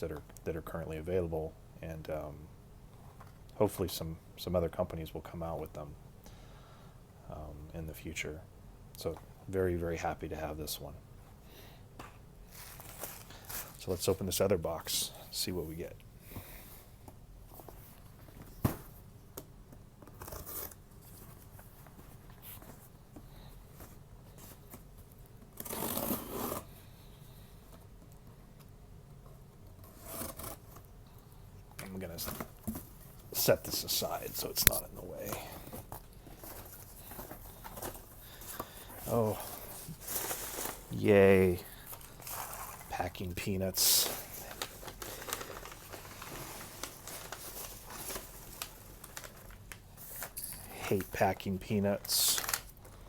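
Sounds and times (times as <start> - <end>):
cardboard tearing rip: 25.6 - 26.7, 29.9 - 30.6
hands rummaging through packing peanuts: 33.3 - 53.0.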